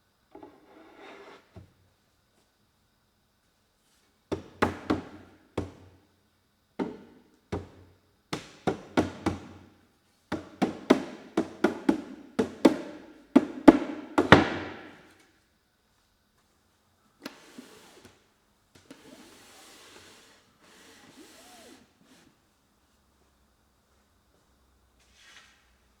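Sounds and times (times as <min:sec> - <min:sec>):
sharp knocks on wood: 0:10.3 - 0:15.0.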